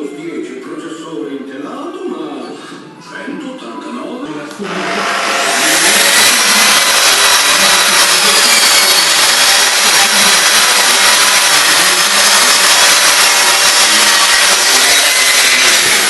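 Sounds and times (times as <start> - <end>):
power tool whirring: 4.6 - 16.0.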